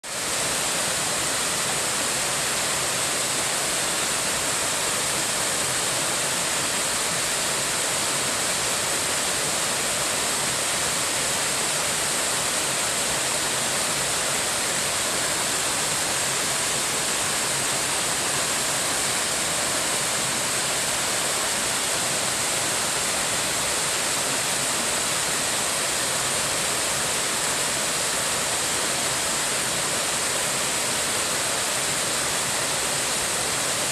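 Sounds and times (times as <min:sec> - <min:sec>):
waterfall roaring: 0:00.1 - 0:33.9.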